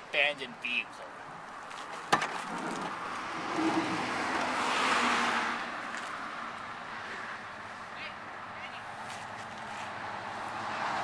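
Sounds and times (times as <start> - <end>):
car passing by: 2.5 - 7.9, 9.0 - 11.0.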